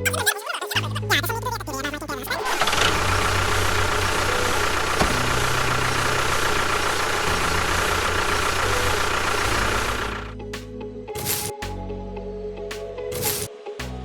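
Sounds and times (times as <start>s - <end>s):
small engine idling with hiss: 2.4s - 10.4s, 11.2s - 11.5s, 13.2s - 13.5s.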